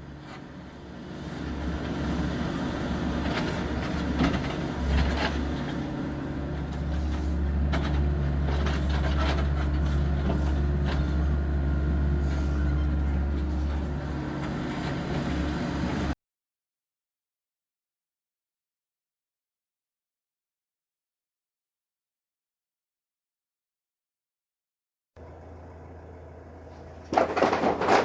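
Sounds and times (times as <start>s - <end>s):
heavy diesel engine running: 0.0s - 16.2s, 25.2s - 28.0s
knocks and clatter: 3.2s - 5.8s, 7.6s - 11.1s, 27.0s - 28.0s.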